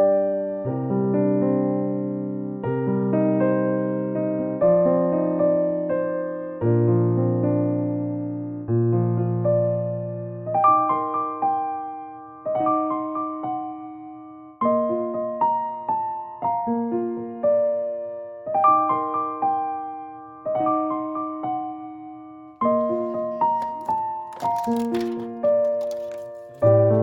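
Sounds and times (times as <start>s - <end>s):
gentle keyboard melody: 9.4s - 27.0s.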